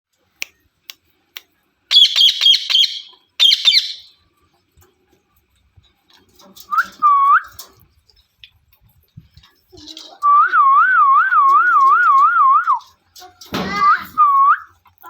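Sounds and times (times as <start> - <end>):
parrot squawking: 1.9 - 4.1
parrot whistling: 1.9 - 4.1.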